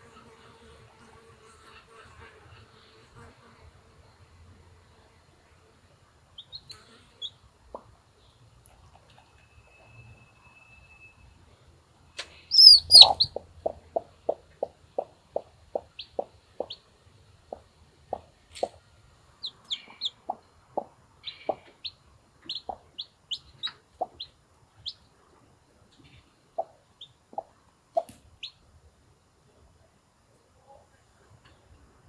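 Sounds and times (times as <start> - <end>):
chicks peeping: 6.4 - 8.0, 12.4 - 16.8, 17.4 - 25.1, 25.9 - 28.6
hen clucking: 6.4 - 8.0, 12.3 - 16.8, 17.4 - 18.8, 19.4 - 25.0, 25.9 - 28.6.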